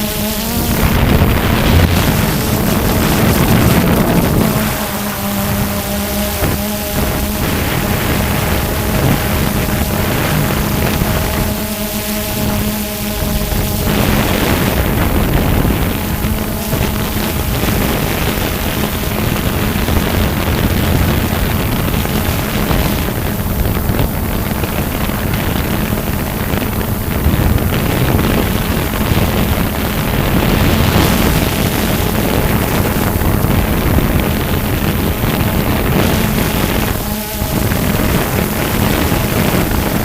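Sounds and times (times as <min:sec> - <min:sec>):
drone propellers humming: 0:00.0 - 0:40.0
wind on microphone: 0:00.0 - 0:40.0.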